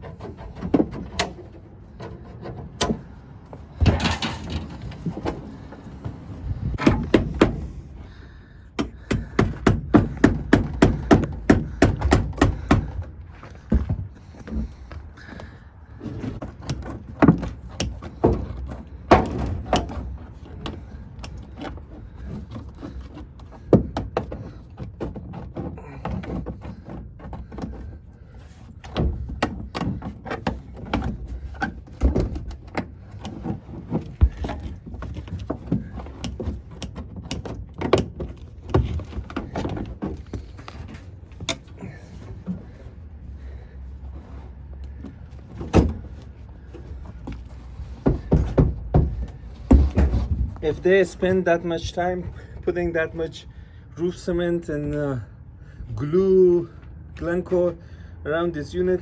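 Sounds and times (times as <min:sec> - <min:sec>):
hammering and knocking: 0:06.8 - 0:07.7, 0:08.8 - 0:15.5, 0:28.9 - 0:40.5, 0:47.2 - 0:50.6.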